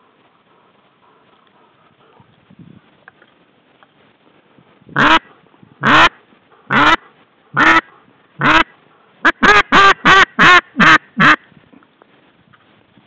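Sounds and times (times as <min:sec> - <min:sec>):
duck call quacks: 0:05.0 - 0:07.0, 0:07.6 - 0:11.4.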